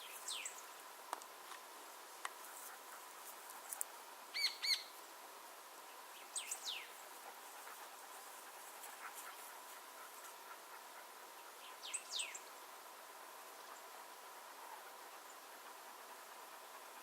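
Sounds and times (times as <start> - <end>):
faint hiss: 0.0 - 17.0
bird chirps: 4.3 - 4.9.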